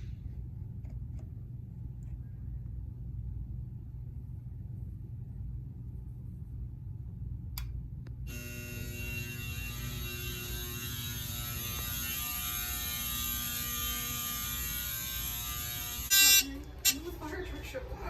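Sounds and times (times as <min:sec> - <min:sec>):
low electrical hum: 0:00.0 - 0:18.0
click: 0:07.5 - 0:08.2
buzzy fire alarm horn: 0:08.3 - 0:17.0.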